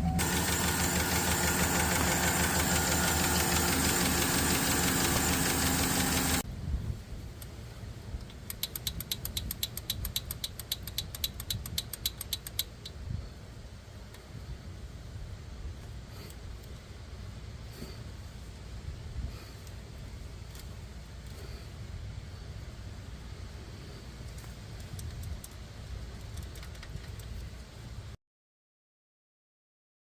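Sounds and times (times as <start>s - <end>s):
engine running with tapping: 0.0s - 6.4s
rapid even ticking: 0.2s - 6.4s.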